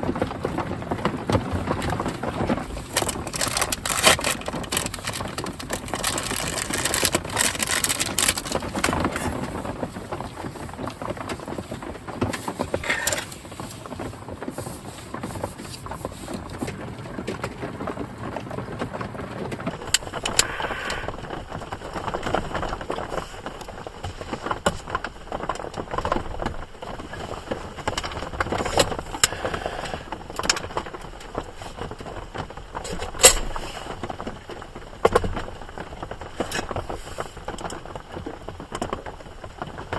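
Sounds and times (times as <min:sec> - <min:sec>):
knocks and handling sounds: 0:00.0 - 0:20.3
rain on a tarp and van: 0:00.0 - 0:39.9.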